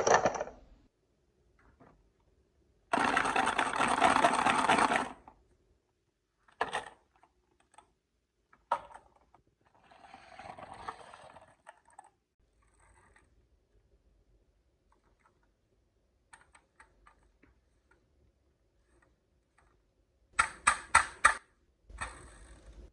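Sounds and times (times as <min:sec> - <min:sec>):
marbles rattling down wooden run: 0:02.9 - 0:05.2.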